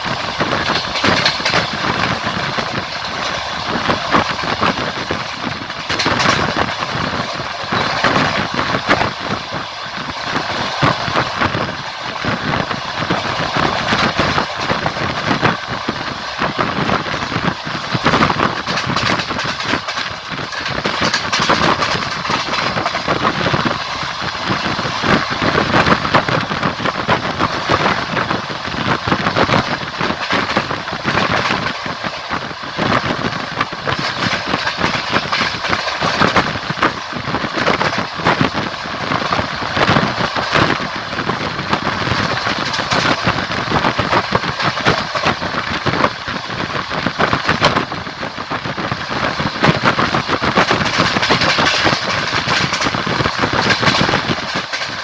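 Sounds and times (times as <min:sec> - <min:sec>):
train rumble and hiss: 0:00.0 - 0:55.0
train wheels clattering on rails: 0:00.0 - 0:55.0.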